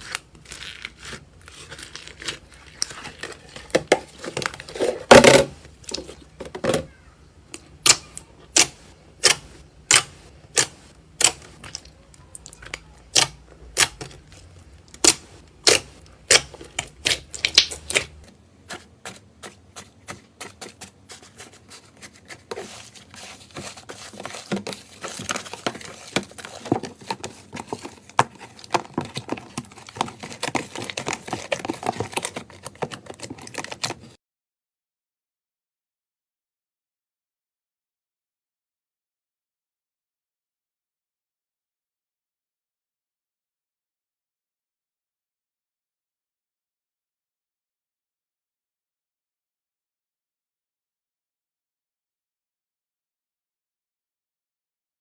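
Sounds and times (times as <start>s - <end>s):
slime crackling: 0.0s - 5.0s, 7.5s - 18.2s.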